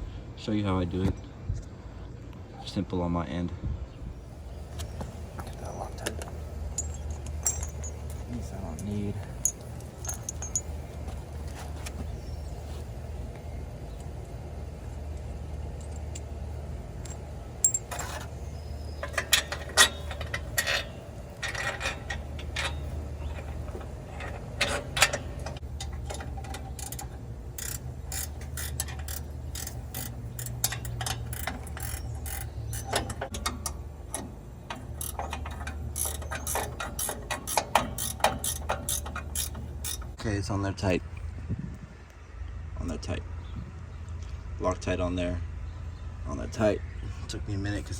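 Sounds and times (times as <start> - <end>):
steady low hum: 0.0 - 47.9
ratchet wrench clicking: 24.6 - 33.8, 34.7 - 40.2.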